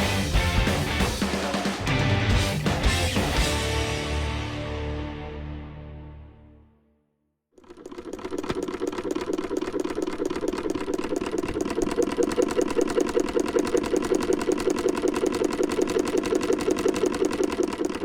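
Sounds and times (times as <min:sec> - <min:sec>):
sewing machine stitching: 0:07.6 - 0:18.0.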